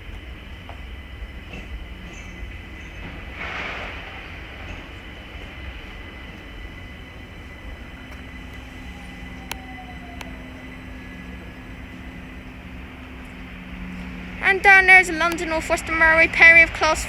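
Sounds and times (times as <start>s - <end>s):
electric train rumbling: 0.0s - 17.0s
thin steady whine: 6.0s - 17.0s
low hum: 8.0s - 17.0s.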